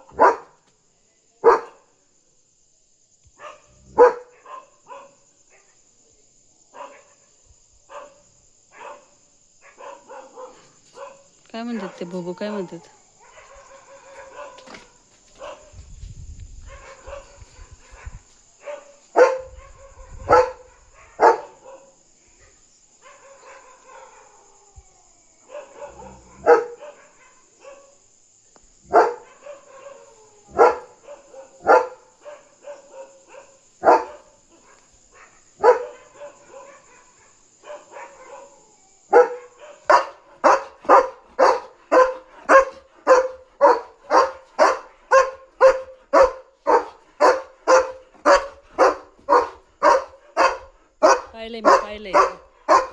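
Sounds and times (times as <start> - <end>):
dog alarm-barking: 0.1 - 0.5, 18.7 - 19.6, 20.3 - 21.9, 25.6 - 27.0, 28.9 - 34.8, 35.6 - 37.0, 39.1 - 52.9.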